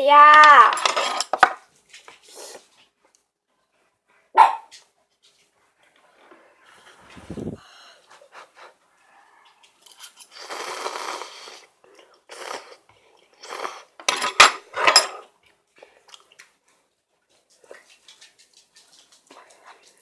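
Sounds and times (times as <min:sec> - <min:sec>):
utensils clinking on bowl: 0:00.3 - 0:01.6, 0:14.0 - 0:15.3
person eating: 0:09.4 - 0:14.1, 0:15.7 - 0:16.6.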